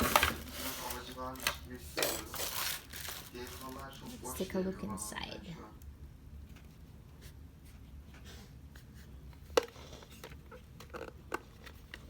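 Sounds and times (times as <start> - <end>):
handling noises: 0.0 - 4.2.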